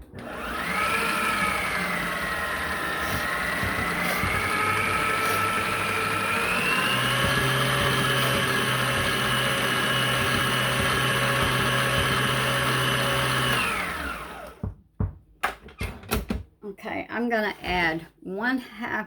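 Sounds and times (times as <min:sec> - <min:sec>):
electric mixer motor whining: 0:00.0 - 0:14.7.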